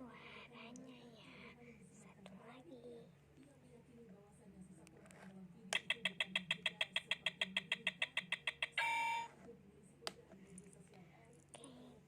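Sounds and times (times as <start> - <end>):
toy timer beeping: 5.8 - 9.3.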